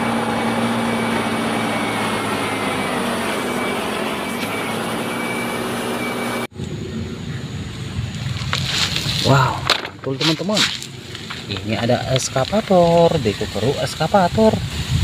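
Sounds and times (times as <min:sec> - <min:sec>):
machine running with low hum: 0:00.0 - 0:09.2
faint high whine: 0:00.0 - 0:10.5.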